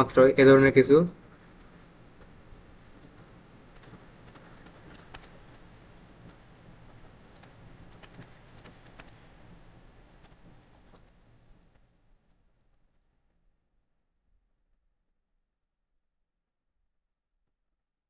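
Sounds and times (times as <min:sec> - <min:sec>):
low steady hum: 0:00.0 - 0:14.4
computer keyboard clicks and taps: 0:03.1 - 0:05.6, 0:07.2 - 0:09.2.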